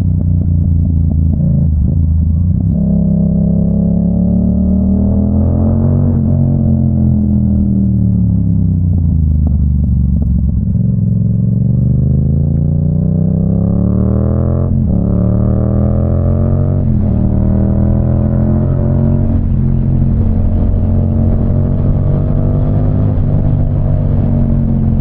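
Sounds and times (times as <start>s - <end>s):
motorcycle engine accelerating: 0.0s - 25.0s.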